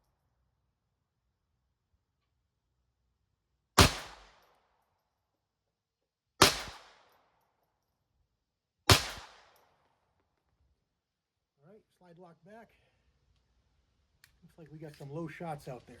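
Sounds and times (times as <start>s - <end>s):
pistol shots with ringing echo: 3.8s - 4.5s, 6.4s - 7.1s, 8.9s - 9.7s.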